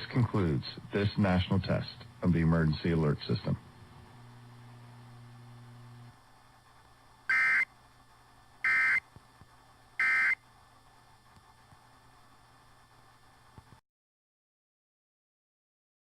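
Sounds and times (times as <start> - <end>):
faint radio hiss: 0.0 - 13.8
two-tone digital data bursts: 7.3 - 7.6, 8.7 - 9.0, 10.0 - 10.4.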